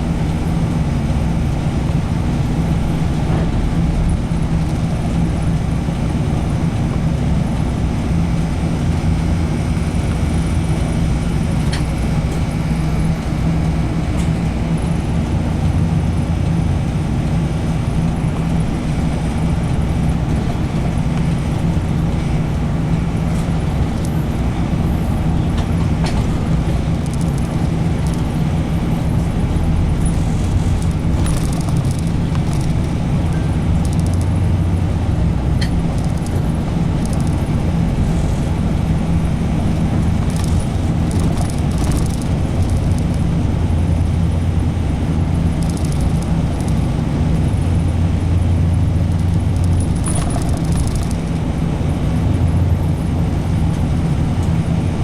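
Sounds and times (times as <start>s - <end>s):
bus engine and tyres droning: 0.0s - 55.0s
faint rattles of fittings: 30.0s - 32.9s, 40.2s - 43.2s, 49.1s - 51.4s.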